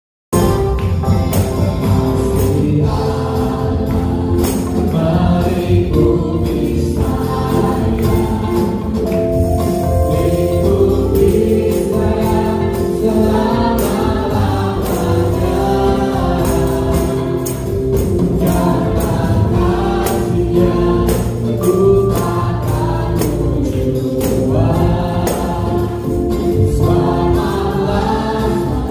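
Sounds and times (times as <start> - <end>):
instrumental accompaniment: 0.3 - 28.9
percussion beat: 0.3 - 28.9
choir singing gospel song: 0.4 - 28.9.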